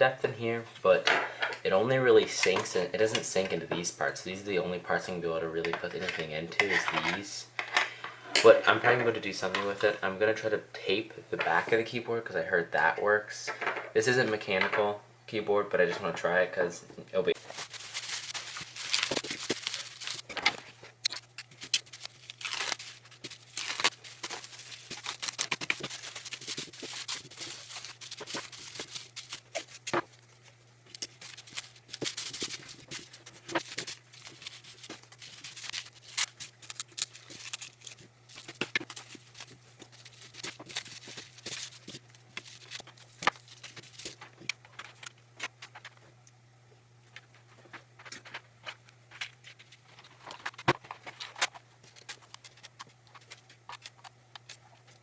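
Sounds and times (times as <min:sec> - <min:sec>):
tape tearing and crinkling: 0:17.4 - 0:30.2, 0:30.9 - 0:44.2.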